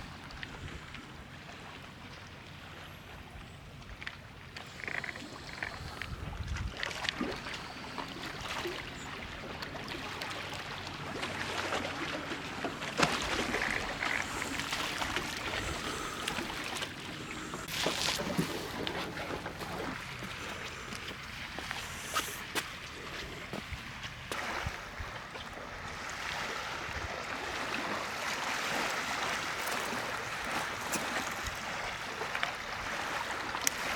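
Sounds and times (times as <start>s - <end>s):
waves lapping at shore: 0.0s - 33.9s.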